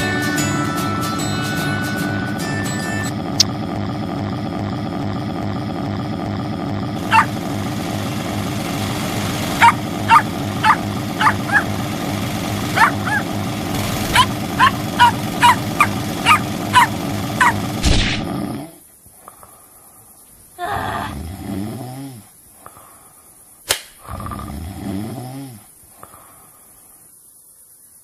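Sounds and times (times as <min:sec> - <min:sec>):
low drone: 0:00.0 - 0:18.5
dog barking: 0:07.1 - 0:07.3, 0:09.6 - 0:11.7, 0:12.7 - 0:13.3, 0:14.1 - 0:17.6.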